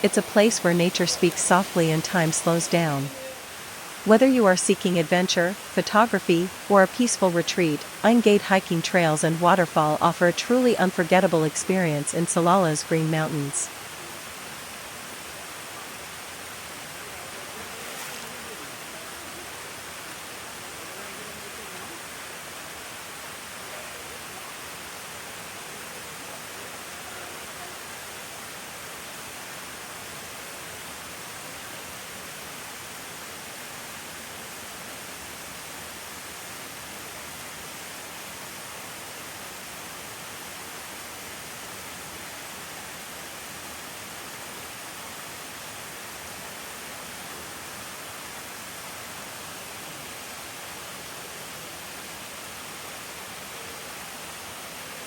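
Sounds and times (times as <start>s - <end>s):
water rushing: 0.0s - 55.0s.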